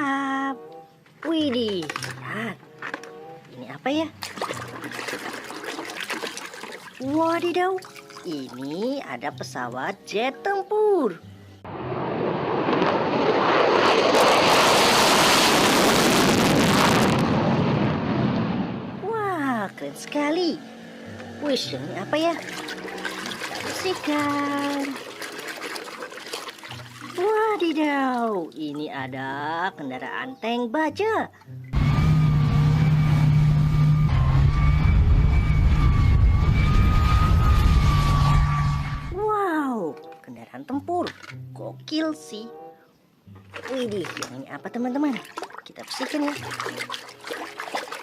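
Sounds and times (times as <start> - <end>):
high whine: 11.6 - 19.0, 31.8 - 39.2
tank engine rumble: 31.8 - 39.2.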